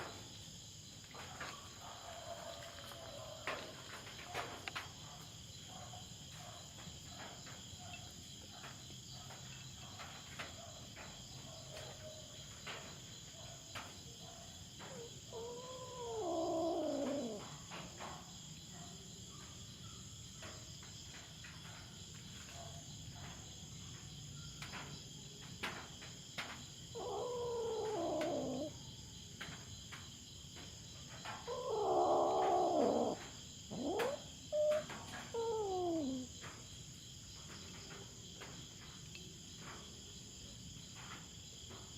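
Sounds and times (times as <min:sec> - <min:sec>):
crickets chirring: 0:00.0 - 0:41.9
cat yowling: 0:14.8 - 0:17.6, 0:26.9 - 0:28.8, 0:31.4 - 0:36.3.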